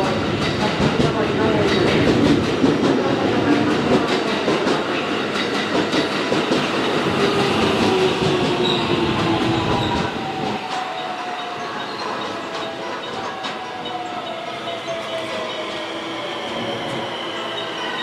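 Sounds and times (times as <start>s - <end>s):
train wheels clacking on rails: 0.0s - 18.0s.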